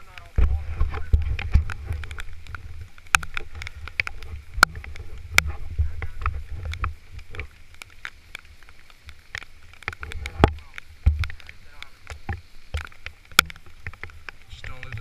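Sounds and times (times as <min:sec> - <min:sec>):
sharp ticks and knocks: 0:00.0 - 0:15.0
wind rumbling on microphone: 0:00.0 - 0:15.0.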